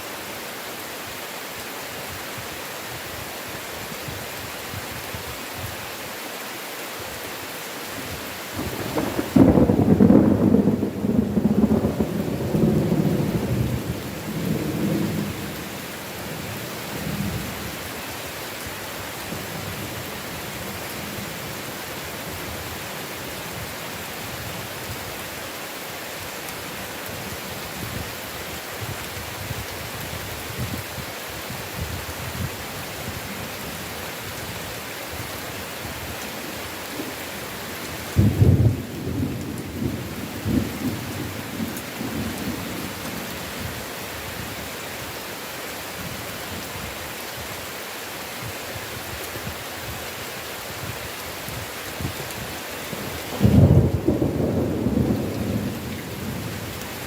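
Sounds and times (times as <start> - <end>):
heavy rain falling: 0.0 - 57.0
thunder rumbling: 8.6 - 15.7, 38.1 - 43.3, 53.3 - 56.7.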